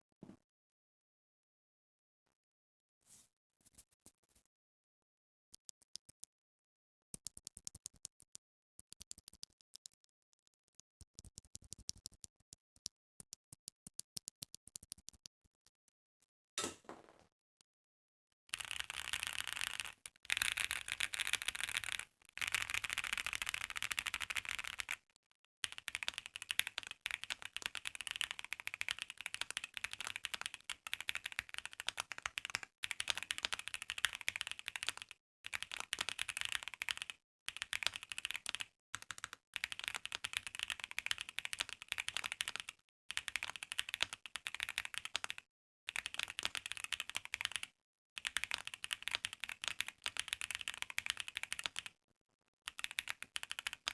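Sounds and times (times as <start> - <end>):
mechanical keyboard typing: 18.5 - 25.0, 25.6 - 51.9, 52.7 - 53.9.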